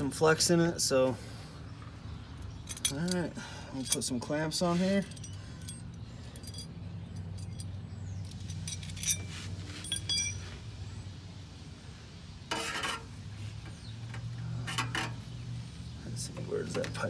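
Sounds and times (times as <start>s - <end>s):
metal clamps clinking: 2.4s - 4.1s, 4.8s - 10.4s, 14.1s - 15.4s.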